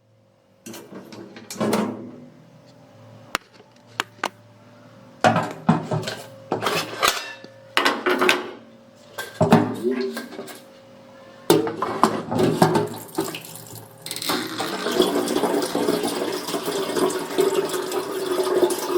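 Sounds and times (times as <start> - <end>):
metal cookware clattering: 5.3 - 8.6.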